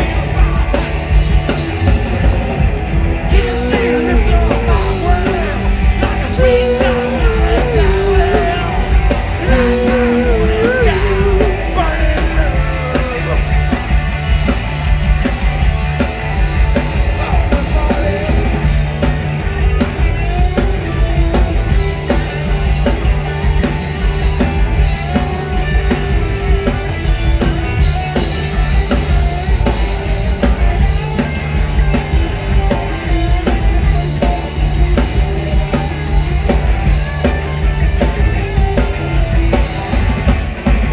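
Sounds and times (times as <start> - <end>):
punk rock band playing: 0.0 - 40.9
person singing: 3.3 - 13.6.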